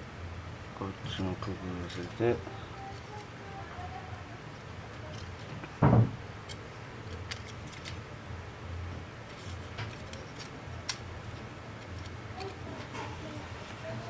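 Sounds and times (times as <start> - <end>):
low steady hum: 0.0 - 14.0
dull thump: 5.8 - 6.2.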